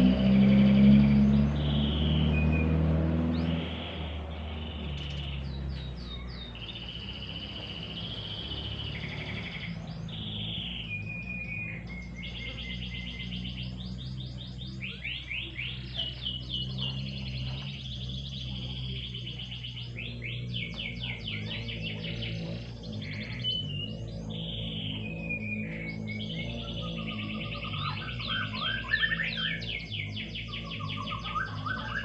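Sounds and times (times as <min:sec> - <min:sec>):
canary singing trills: 0:00.0 - 0:32.0
low rumbling hum: 0:08.7 - 0:32.0.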